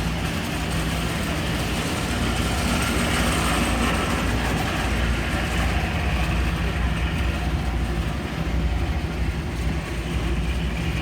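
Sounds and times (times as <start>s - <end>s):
boat engines droning: 0.0s - 11.0s.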